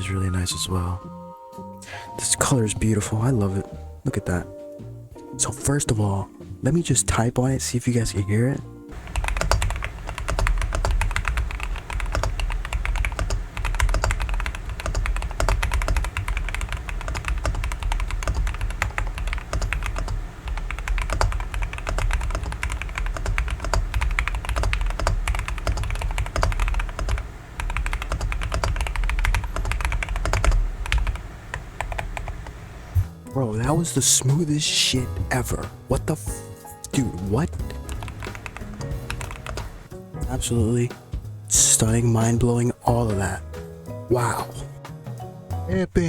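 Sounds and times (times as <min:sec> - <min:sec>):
fast mechanical keyboard typing: 0:09.0 - 0:32.5, 0:37.6 - 0:39.8.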